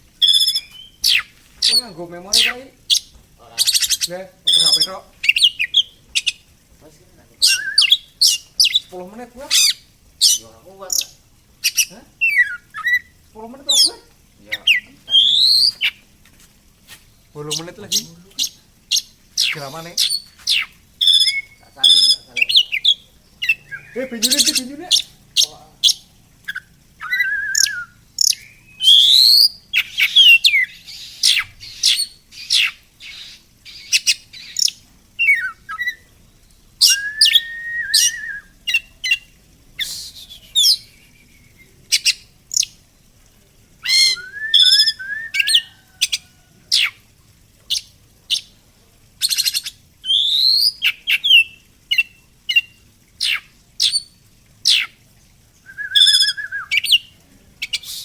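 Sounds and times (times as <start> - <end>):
songbirds chirping and singing: 0.0 - 6.6, 7.2 - 16.0, 16.9 - 39.4.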